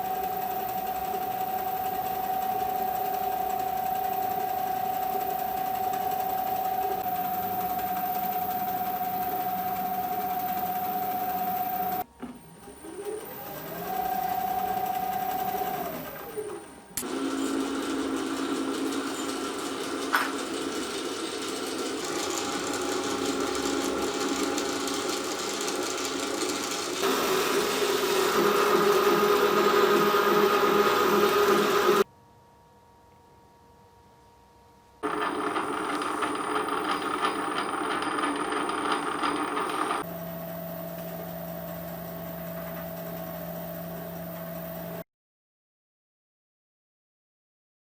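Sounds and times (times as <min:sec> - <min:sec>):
lathe motor whining: 0:00.0 - 0:12.0, 0:12.8 - 0:32.0, 0:35.0 - 0:45.0.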